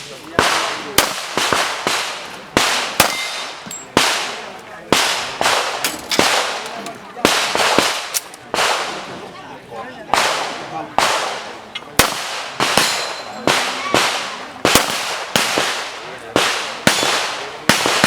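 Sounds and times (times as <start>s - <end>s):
handgun shots: 0.4s - 4.4s, 12.0s - 15.8s.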